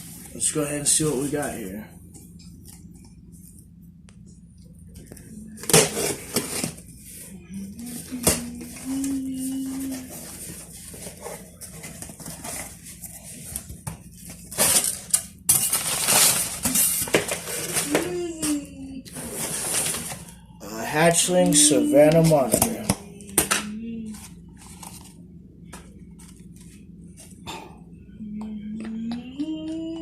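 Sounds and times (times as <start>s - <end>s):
box packing rustling and scraping: 5.6s - 7.2s, 7.8s - 18.2s, 19.1s - 20.4s.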